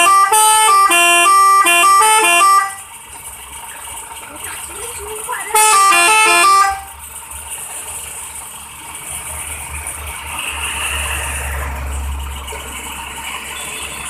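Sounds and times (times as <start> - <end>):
musical vehicle horn: 0.0 - 2.9, 5.5 - 6.9
heavy vehicle engine rumbling: 0.0 - 14.0.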